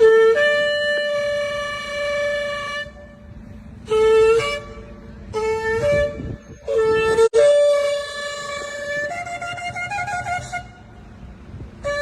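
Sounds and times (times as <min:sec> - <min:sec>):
shofar blasts: 0:06.9 - 0:09.6.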